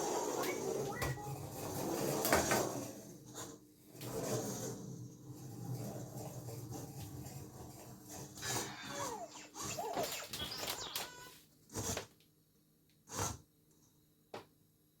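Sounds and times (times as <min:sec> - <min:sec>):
toy robot electronic chirps: 0:08.5 - 0:11.4.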